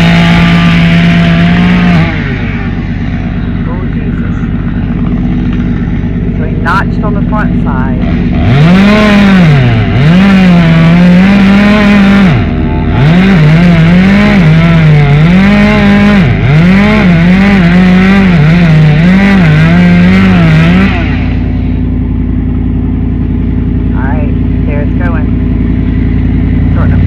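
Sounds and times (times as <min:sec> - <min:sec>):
chainsaw cutting wood: 0:00.0 - 0:02.8, 0:08.0 - 0:21.8
low steady hum: 0:00.0 - 0:08.5.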